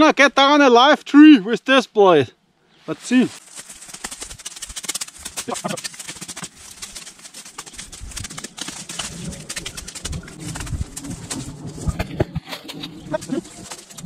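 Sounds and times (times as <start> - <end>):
dove cooing: 8.6 - 14.0.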